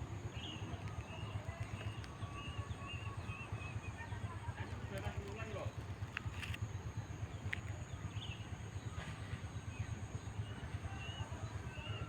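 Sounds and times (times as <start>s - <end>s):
faint bird chirps: 0.2s - 4.7s.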